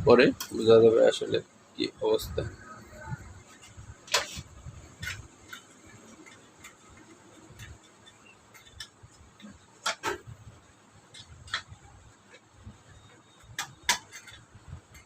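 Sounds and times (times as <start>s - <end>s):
plastic parts clicking and knocking: 3.5s - 10.3s, 11.0s - 15.0s.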